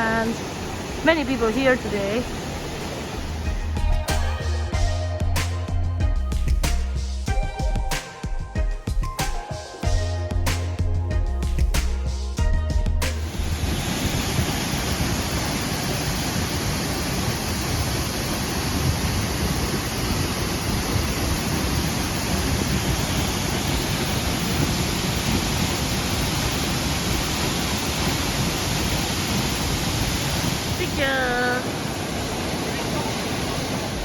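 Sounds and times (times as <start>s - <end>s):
waterfall rushing: 0.0s - 4.8s, 13.2s - 34.0s.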